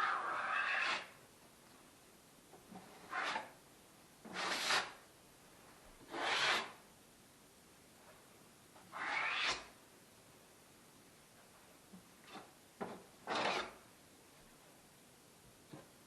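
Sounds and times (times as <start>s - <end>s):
scraping strokes across surface: 0.0s - 1.2s, 2.7s - 3.6s, 4.3s - 5.0s, 6.0s - 6.8s, 8.9s - 9.7s, 13.2s - 13.8s.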